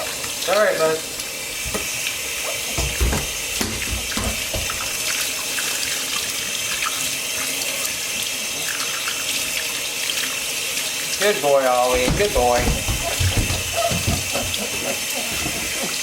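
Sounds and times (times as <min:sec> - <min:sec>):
tap water running: 0:00.0 - 0:16.0
low knocks and splashes: 0:02.7 - 0:05.3, 0:11.9 - 0:15.7.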